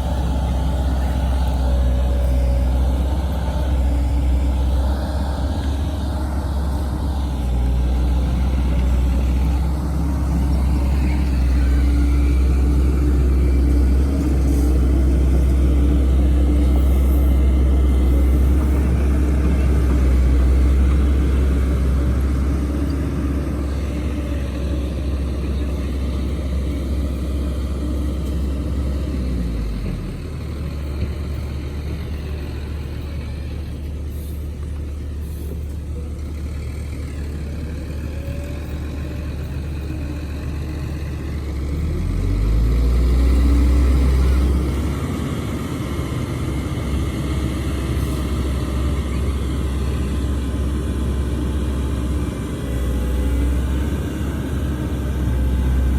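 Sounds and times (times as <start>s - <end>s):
heavy diesel engine rumbling: 0.0s - 55.9s.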